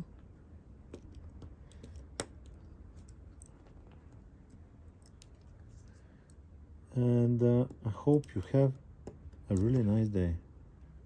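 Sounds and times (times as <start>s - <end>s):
steady low hum: 0.0s - 11.0s
light clicks and taps: 7.6s - 10.0s.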